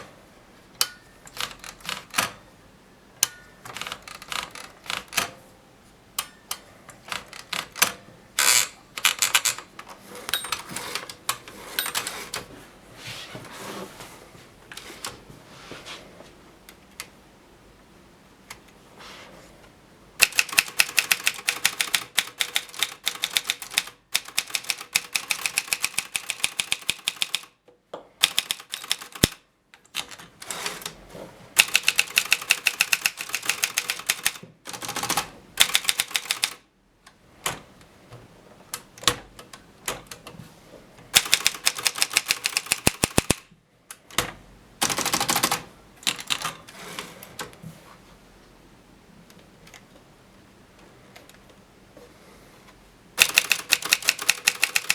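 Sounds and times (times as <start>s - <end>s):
typewriter key strikes: 20.2s - 27.5s, 28.2s - 29.4s, 41.2s - 43.4s, 53.2s - 54.9s.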